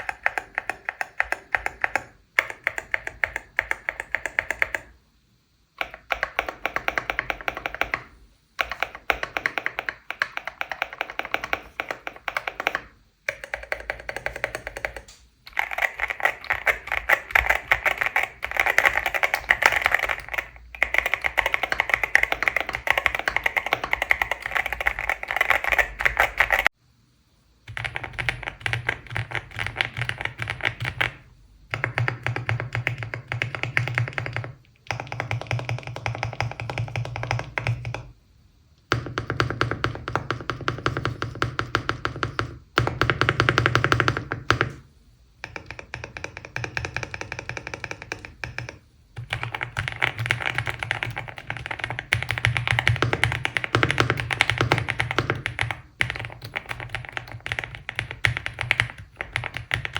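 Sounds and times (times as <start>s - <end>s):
mechanical keyboard typing: 0.0s - 5.0s, 5.8s - 26.8s, 27.7s - 38.1s, 38.9s - 44.8s, 45.4s - 59.9s.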